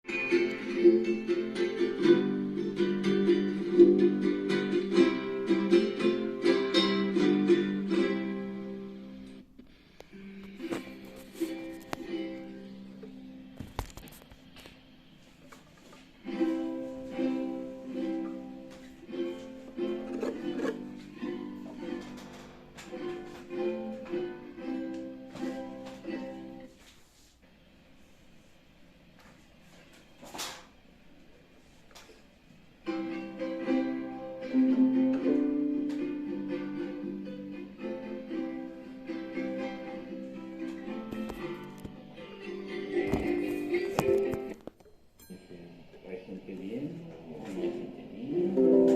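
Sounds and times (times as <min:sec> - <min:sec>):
plucked string instrument: 0:00.0 - 0:09.4, 0:10.1 - 0:14.2, 0:15.9 - 0:26.7, 0:32.8 - 0:44.7, 0:46.6 - 0:48.9.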